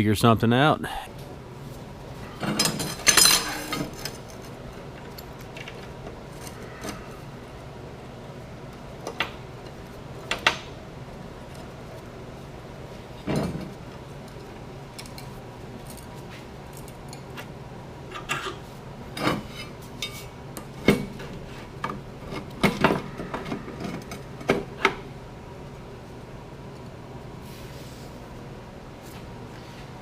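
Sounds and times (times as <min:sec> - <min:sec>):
steady low hum: 0:00.0 - 0:30.0
metal tools clinking: 0:02.4 - 0:05.3.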